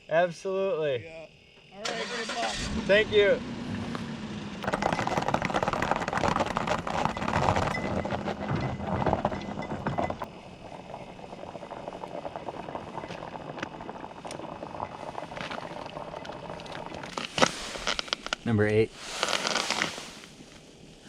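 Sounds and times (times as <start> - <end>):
vehicle engine pulling away: 1.8 - 12.1.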